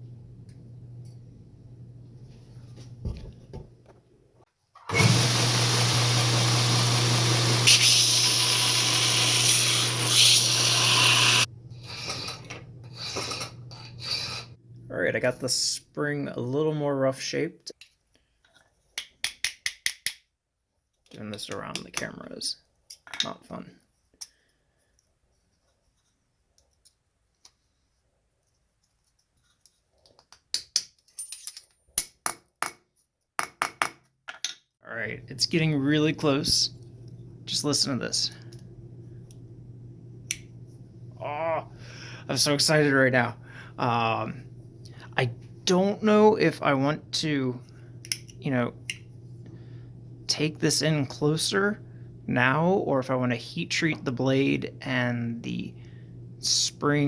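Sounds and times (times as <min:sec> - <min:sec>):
power grinder grinding steel: 0:04.9 - 0:11.5.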